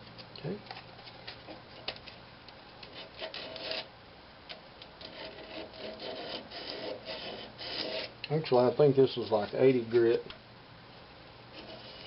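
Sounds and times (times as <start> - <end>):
sandpaper scratching wood: 5.1 - 8.1.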